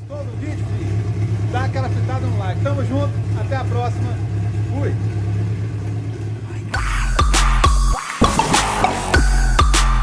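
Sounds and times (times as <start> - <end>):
electronic music with deep bass: 6.6 - 10.0.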